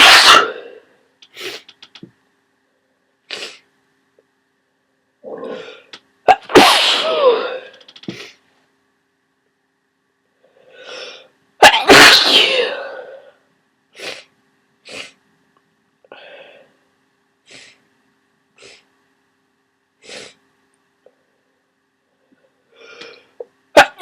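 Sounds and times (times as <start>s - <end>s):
loud sneeze: 0.0s - 0.8s, 6.3s - 7.8s, 11.6s - 13.3s, 23.8s - 24.0s
quiet breath sounds: 16.0s - 16.9s.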